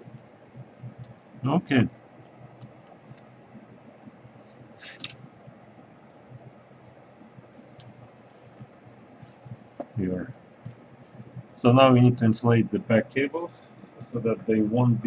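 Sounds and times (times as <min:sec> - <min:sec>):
faint clicks of laptop parts: 0:04.8 - 0:05.3.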